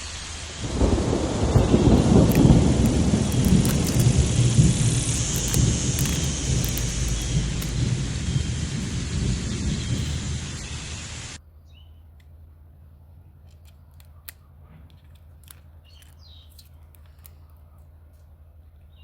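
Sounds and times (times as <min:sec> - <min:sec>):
loud steady rushing noise: 0:00.0 - 0:11.4
low hum: 0:00.0 - 0:11.4
faint clicks: 0:00.6 - 0:11.4.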